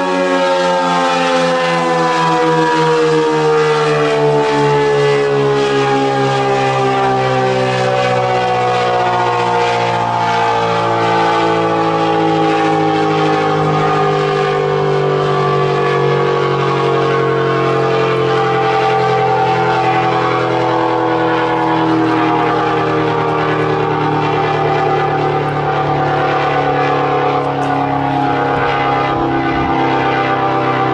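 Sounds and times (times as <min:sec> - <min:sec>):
dual-tone warning siren: 0:00.0 - 0:30.9
wind on microphone: 0:18.5 - 0:30.9.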